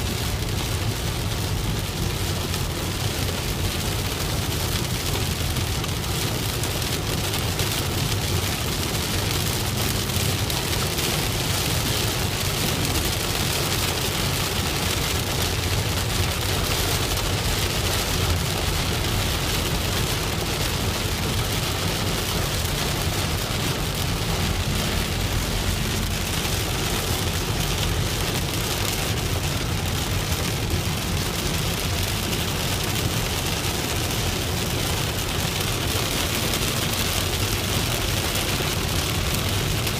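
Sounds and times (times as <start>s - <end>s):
rain on a moving car: 0.0s - 39.9s
road and engine rumble: 0.0s - 39.9s.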